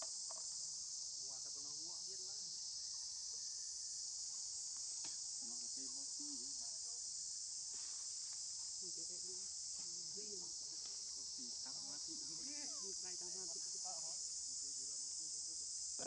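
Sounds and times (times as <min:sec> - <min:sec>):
high-pitched insect chorus: 0:00.0 - 0:16.0
faint wavering voice-like sounds: 0:12.2 - 0:13.1.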